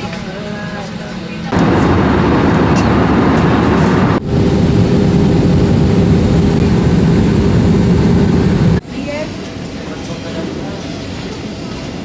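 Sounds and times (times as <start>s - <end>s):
jet engines roaring: 1.5s - 8.8s.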